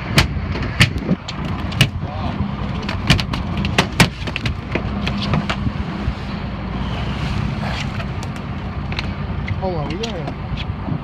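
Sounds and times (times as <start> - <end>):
sharp knocks and clicks: 0.0 - 2.0
water noise: 0.0 - 11.0
wind: 0.0 - 11.0.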